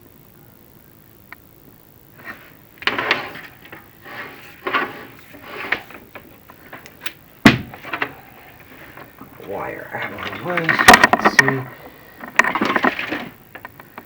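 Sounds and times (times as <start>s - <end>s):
camera cable scraping in flue: 2.2s - 9.4s, 10.0s - 14.0s.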